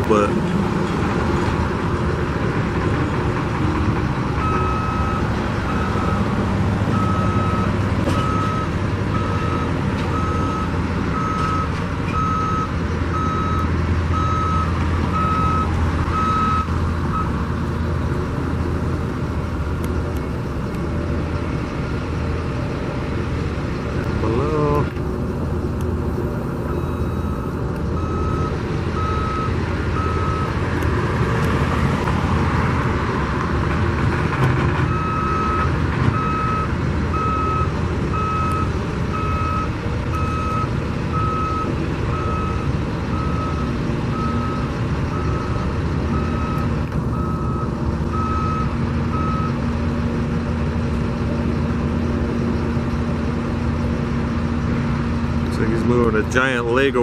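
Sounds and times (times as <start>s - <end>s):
low rumble of traffic and machinery: 0.0s - 57.0s
reversing alarm beeping: 4.3s - 17.4s, 26.4s - 30.6s, 34.9s - 49.6s.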